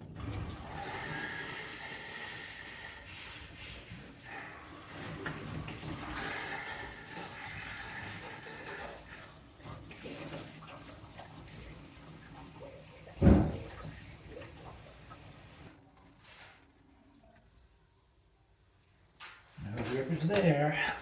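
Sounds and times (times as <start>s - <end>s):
water hissing through plumbing: 0.0s - 17.2s
loud thump: 13.2s - 13.7s.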